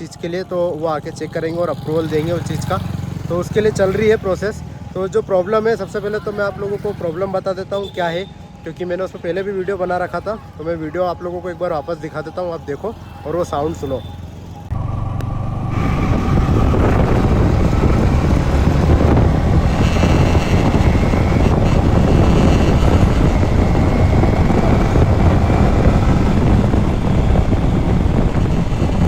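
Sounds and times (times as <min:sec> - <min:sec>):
motorcycle engine accelerating: 0:00.9 - 0:05.1, 0:14.2 - 0:29.0
engine rattling: 0:13.6 - 0:29.0
wind noise on microphone: 0:14.7 - 0:29.0.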